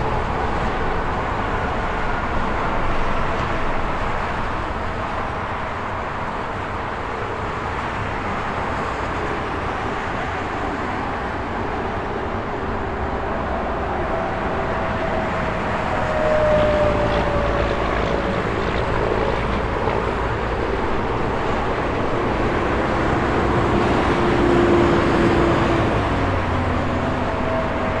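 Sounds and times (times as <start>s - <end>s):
highway traffic rushing: 0.0s - 28.0s
vehicles passing with whines: 7.0s - 28.0s.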